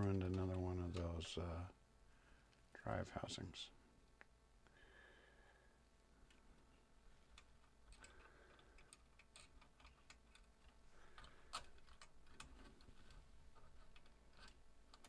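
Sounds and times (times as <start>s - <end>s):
small parts clicking: 6.2s - 15.0s.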